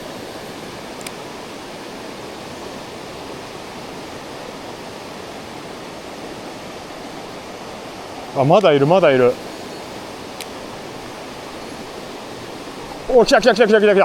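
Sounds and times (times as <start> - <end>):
stream rushing over rocks: 0.0 - 14.0.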